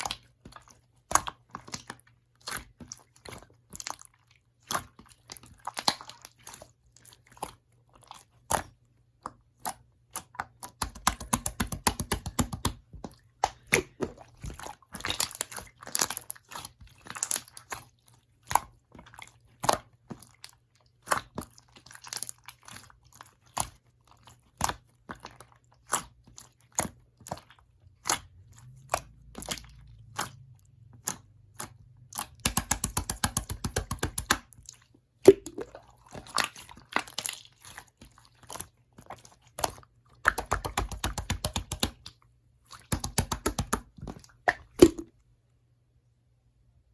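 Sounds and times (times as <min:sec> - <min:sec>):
slime squeezed by hand popping: 0:44.5 - 0:45.1.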